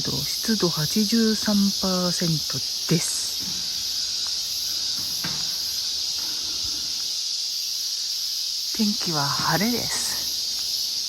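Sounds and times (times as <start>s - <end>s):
insects chirring: 0.0s - 11.0s
faint knocks: 4.9s - 6.7s.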